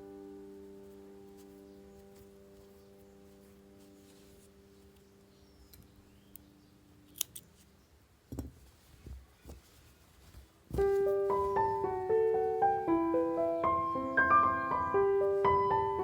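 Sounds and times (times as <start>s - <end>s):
piano music: 0.0s - 4.7s, 10.8s - 16.0s
handling knocks on a worktable: 8.3s - 9.8s.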